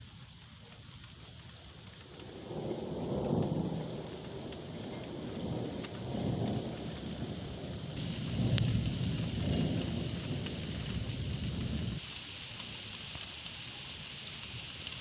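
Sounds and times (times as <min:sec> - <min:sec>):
heavy rain: 0:00.0 - 0:15.0
rolling thunder: 0:02.2 - 0:12.0.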